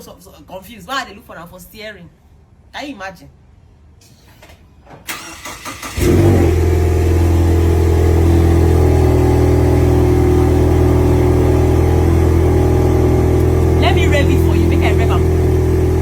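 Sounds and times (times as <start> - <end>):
car starter cranking: 5.1 - 7.4
car engine idling: 5.1 - 16.0.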